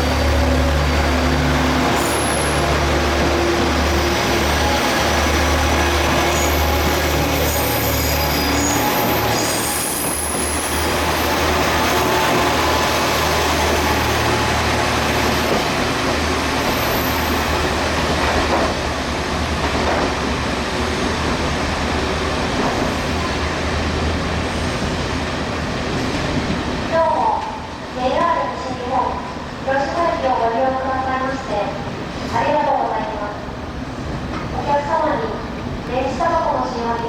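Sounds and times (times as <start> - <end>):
train rumbling on rails: 0.0 - 37.0
high-pitched wheel squeals: 6.2 - 11.3.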